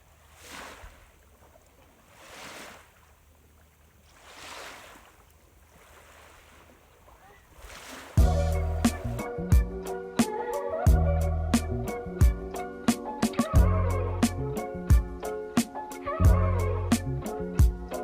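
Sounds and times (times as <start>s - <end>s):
small sea waves washing ashore: 0.0s - 9.2s
music: 8.2s - 18.0s.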